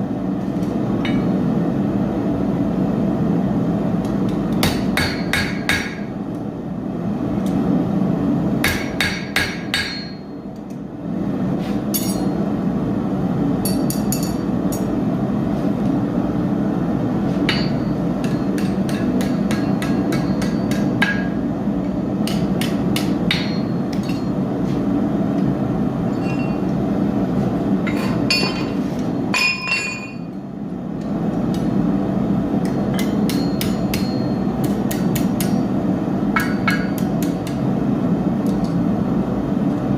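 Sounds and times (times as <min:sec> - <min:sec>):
hammer striking steel on anvil: 0:04.3 - 0:06.1, 0:08.6 - 0:10.3, 0:11.9 - 0:12.4, 0:13.6 - 0:14.9, 0:17.4 - 0:21.4, 0:22.2 - 0:24.4, 0:27.9 - 0:30.4, 0:32.6 - 0:35.7, 0:36.3 - 0:37.6.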